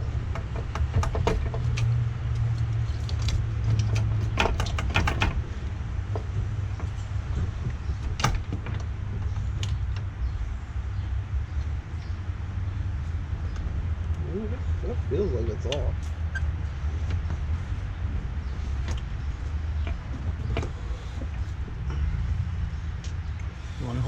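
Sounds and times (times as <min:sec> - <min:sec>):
light metal clicks and rattles: 0:00.0 - 0:10.4, 0:15.7 - 0:22.0
steady low hum: 0:00.0 - 0:24.0.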